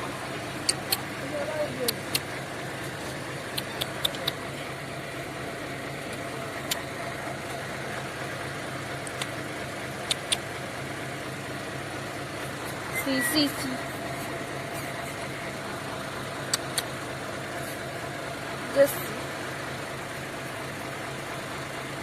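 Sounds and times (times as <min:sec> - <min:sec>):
truck engine idling: 0:00.0 - 0:22.0
short sharp clicks: 0:10.0 - 0:10.5.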